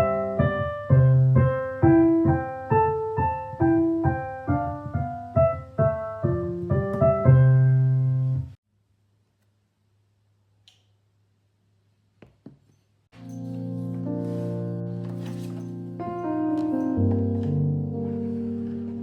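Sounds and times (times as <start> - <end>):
piano slow melody: 0.0 - 8.6, 13.2 - 19.0.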